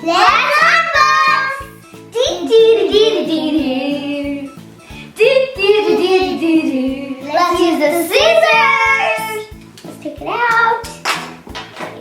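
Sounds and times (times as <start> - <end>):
backing music with steady beat: 0.0 - 12.0
child singing: 5.5 - 9.5.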